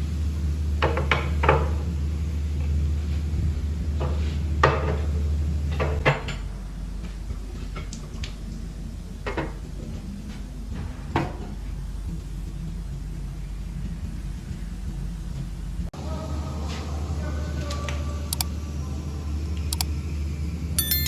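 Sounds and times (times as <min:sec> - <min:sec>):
steady low hum: 0:00.0 - 0:21.0
metal tools clinking and knocking: 0:20.8 - 0:21.0.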